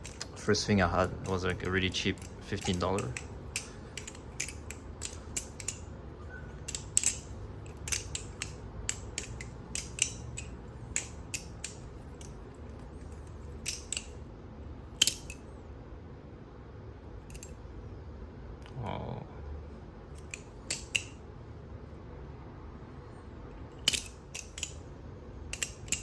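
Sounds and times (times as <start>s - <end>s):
butterfly knife clicking: 1.0s - 5.9s, 6.6s - 14.2s, 15.0s - 15.4s, 17.3s - 17.6s, 20.2s - 21.2s, 23.8s - 24.8s, 25.5s - 26.0s.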